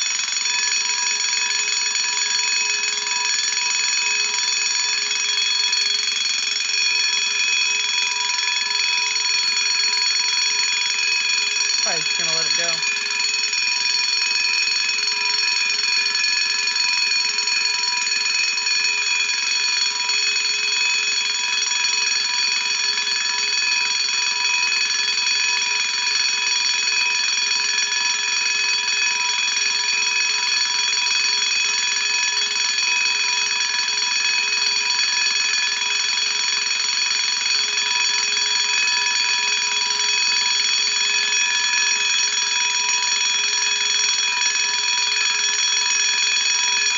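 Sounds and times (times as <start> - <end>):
heat detector bell ringing: 0.0 - 46.9.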